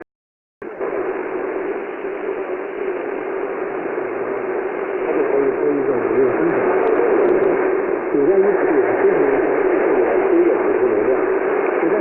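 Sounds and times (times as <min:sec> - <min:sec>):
radio static hiss: 0:00.6 - 0:12.0
faint voice on radio: 0:05.0 - 0:12.0.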